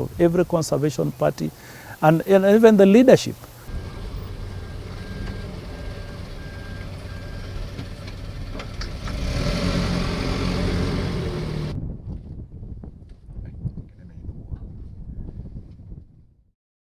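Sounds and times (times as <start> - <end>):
vehicle engine running: 0.0 - 11.8.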